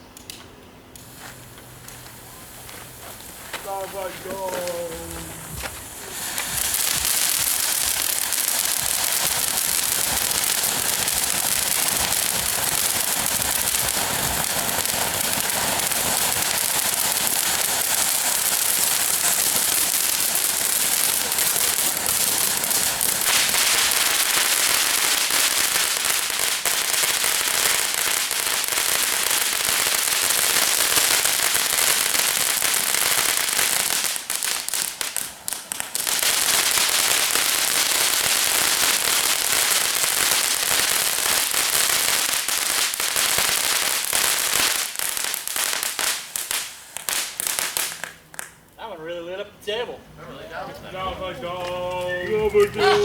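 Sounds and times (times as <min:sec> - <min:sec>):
firework crackling and hissing: 0:00.9 - 0:48.7.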